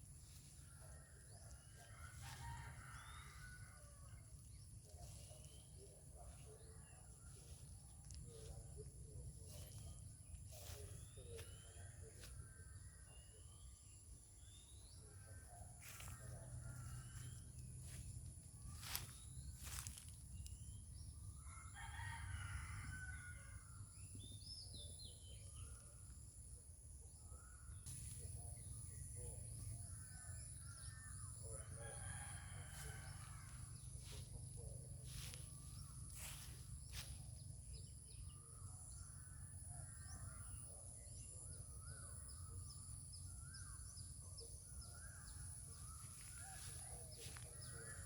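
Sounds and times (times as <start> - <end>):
rooster crowing: 1.7 - 4.3, 21.4 - 23.7, 31.6 - 33.6.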